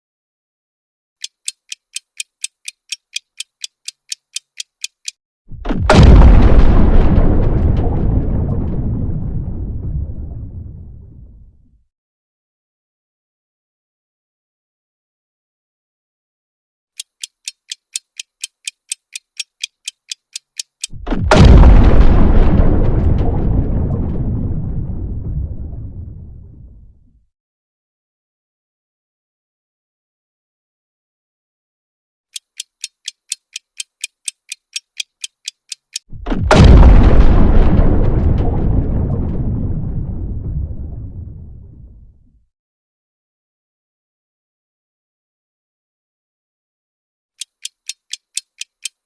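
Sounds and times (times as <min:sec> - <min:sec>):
clock-like ticks: 0:01.2 - 0:05.2, 0:17.0 - 0:21.6, 0:32.3 - 0:36.6, 0:47.4 - 0:49.0
deep rumbling boom: 0:05.5 - 0:11.6, 0:20.9 - 0:27.1, 0:36.1 - 0:42.3.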